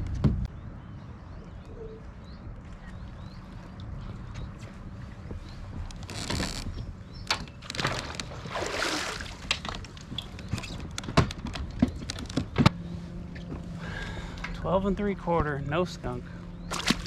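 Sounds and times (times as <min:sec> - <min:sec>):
water splashing and sloshing: 0:07.3 - 0:10.7, 0:16.6 - 0:17.0
steady low hum: 0:11.4 - 0:17.0.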